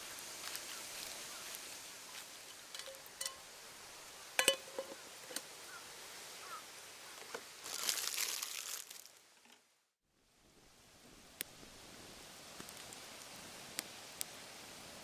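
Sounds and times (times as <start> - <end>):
crackling hiss: 0.0 - 9.6, 10.3 - 15.0
ringing metallic clink: 2.8 - 3.5, 4.4 - 5.0.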